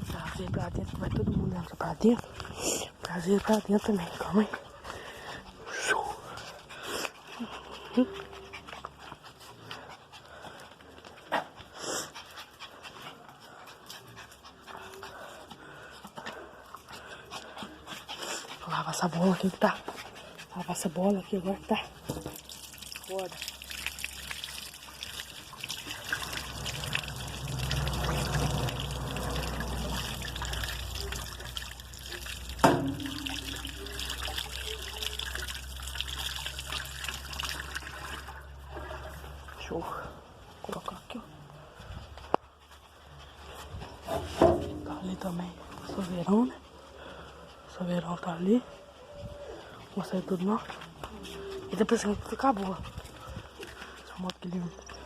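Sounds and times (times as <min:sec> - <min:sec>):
dog panting: 0:00.0 - 0:22.4, 0:41.3 - 0:44.1, 0:45.2 - 0:54.1
water running: 0:21.4 - 0:38.5.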